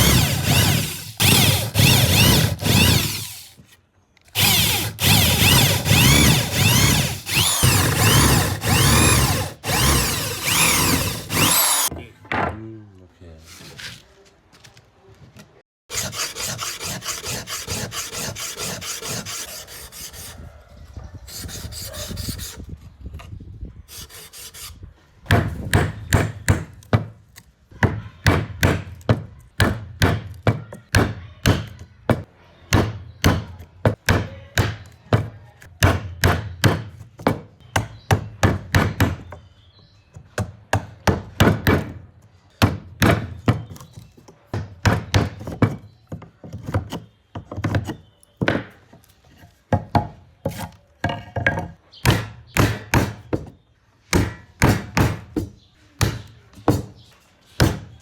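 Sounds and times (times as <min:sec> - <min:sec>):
hand tool rasping wood: 0:00.0 - 0:03.6, 0:04.4 - 0:11.9, 0:15.9 - 0:20.5, 0:21.3 - 0:22.6, 0:23.9 - 0:24.8.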